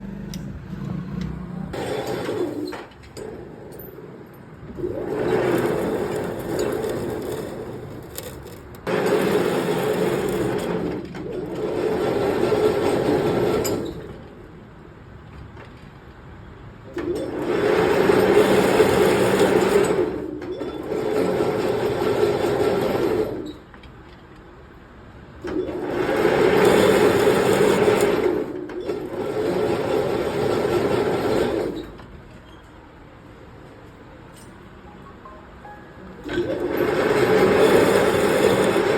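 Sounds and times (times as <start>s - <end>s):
machine running in bursts: 4.8s - 10.9s, 36.2s - 38.9s.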